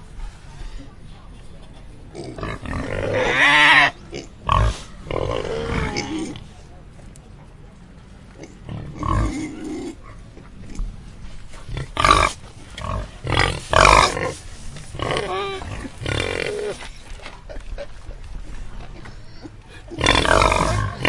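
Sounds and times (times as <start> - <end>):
pigs grunting and squealing: 2.2 - 6.4, 8.4 - 10.0, 11.7 - 16.8, 19.2 - 21.0.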